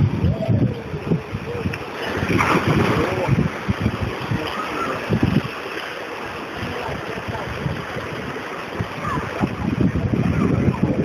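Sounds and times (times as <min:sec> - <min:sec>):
sea waves washing on shore: 0:00.0 - 0:11.0
wind buffeting microphone: 0:00.0 - 0:11.0
faint voices: 0:00.2 - 0:11.0.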